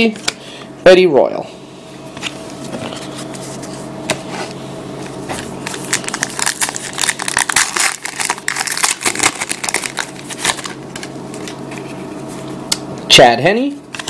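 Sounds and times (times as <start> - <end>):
foil wrapper crinkling: 5.6 - 11.9.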